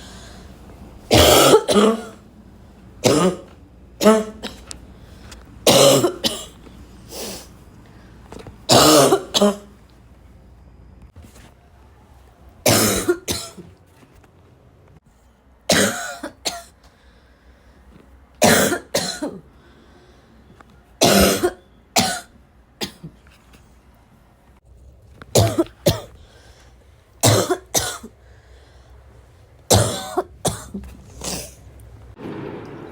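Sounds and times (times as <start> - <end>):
person coughing: 1.1 - 2.2, 3.0 - 4.7, 5.7 - 6.6, 8.7 - 9.7, 12.7 - 13.7, 15.7 - 16.7, 18.4 - 19.4, 21.0 - 23.2, 25.4 - 26.2, 27.2 - 28.1, 29.7 - 31.6.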